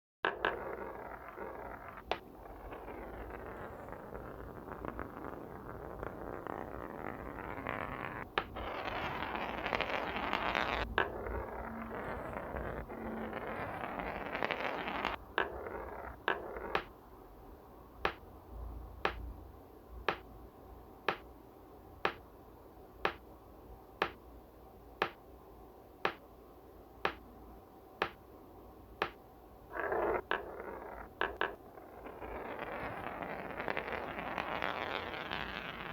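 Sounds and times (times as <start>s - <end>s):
marbles rolling on a track: 0.3s - 16.9s, 29.8s - 35.9s.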